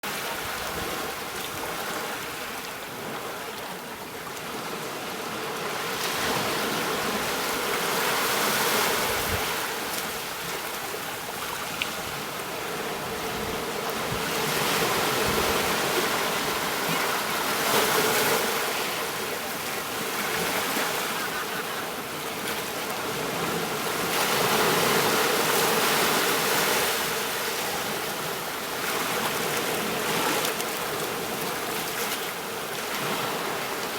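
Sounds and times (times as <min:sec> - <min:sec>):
rushing water: 0:00.0 - 0:33.9.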